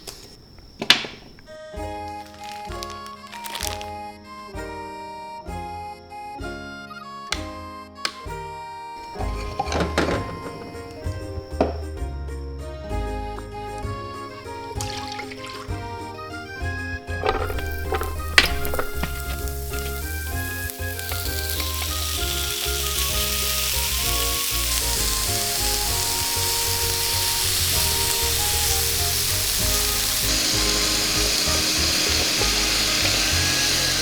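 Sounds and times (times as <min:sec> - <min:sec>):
food sizzling on hot plate: 0:09.0 - 0:11.9, 0:14.3 - 0:34.0.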